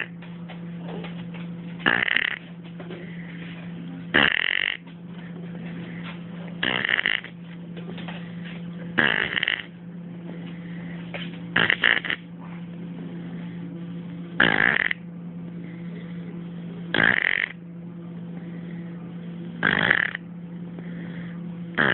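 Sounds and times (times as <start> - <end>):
steady low hum: 0.0 - 21.9
loud rasping snores: 1.8 - 2.4, 4.1 - 4.8, 6.6 - 7.3, 9.0 - 9.7, 11.6 - 12.2, 14.4 - 15.0, 16.9 - 17.6, 19.6 - 20.2.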